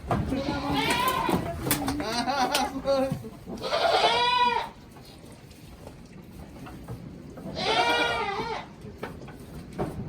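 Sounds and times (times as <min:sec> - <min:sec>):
goat bleating: 0:00.2 - 0:04.8, 0:07.5 - 0:08.7.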